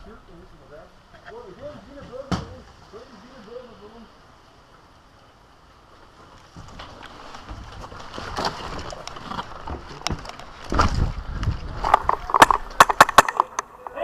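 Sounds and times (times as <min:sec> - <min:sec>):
microphone handling rustle: 0:06.2 - 0:14.0
sharp clicks and knocks: 0:08.8 - 0:14.0.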